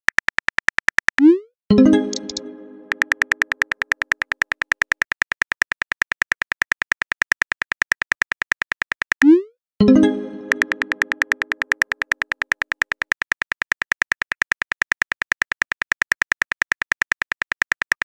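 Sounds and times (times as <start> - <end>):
phone keyboard clicks: 0.1 - 1.3, 2.1 - 9.3, 10.5 - 18.0
chime: 9.8 - 10.6.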